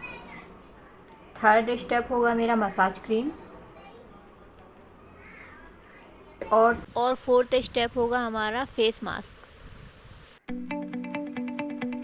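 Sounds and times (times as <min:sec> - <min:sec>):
picked guitar melody: 0:10.5 - 0:12.0.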